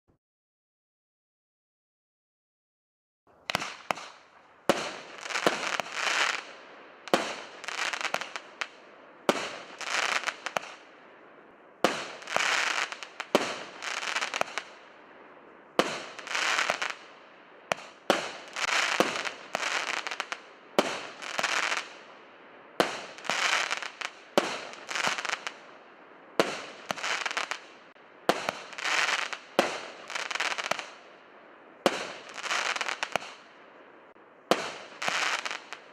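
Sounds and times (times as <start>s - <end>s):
crackling firework stars: 3.3s - 35.9s
firework shots: 3.5s - 10.9s, 11.8s - 14.9s, 15.8s - 22.1s, 22.8s - 25.6s, 26.4s - 31.0s, 31.8s - 33.5s, 34.5s - 35.9s.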